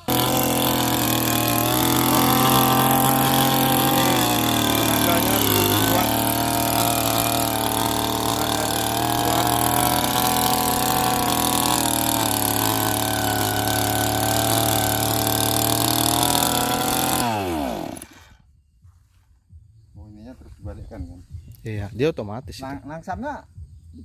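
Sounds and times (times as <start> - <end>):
engine winding down: 0.0 - 18.4
two-stroke auger engine running: 0.0 - 18.4.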